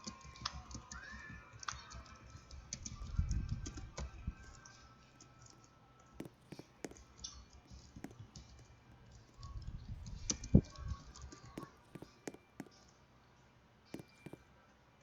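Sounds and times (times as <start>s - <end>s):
light clicks and taps: 6.2s - 7.0s, 11.6s - 12.8s.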